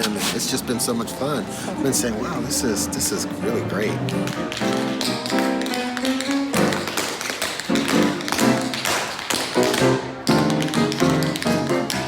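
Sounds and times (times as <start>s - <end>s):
music: 0.0s - 12.0s
tap shoes tapping: 3.9s - 12.0s.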